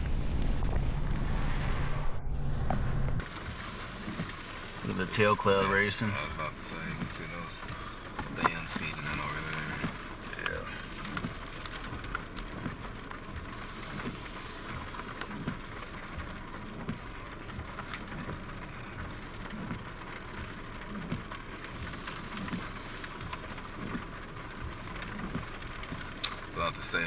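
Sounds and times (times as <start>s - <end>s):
rain falling: 3.2s - 27.0s
sharp raindrop hits: 3.2s - 27.0s.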